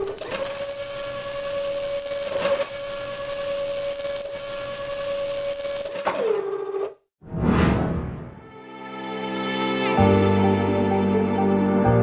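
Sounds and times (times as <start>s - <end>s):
arc welding buzz and crackle: 0.0s - 6.2s.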